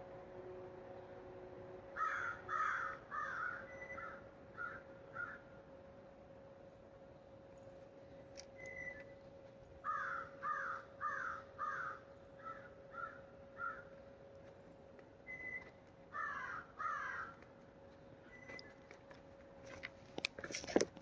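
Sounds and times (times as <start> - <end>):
faint steady hum: 0.0 - 21.0
bird giving harsh caw-like calls: 2.0 - 5.5, 9.8 - 14.0, 16.1 - 17.4.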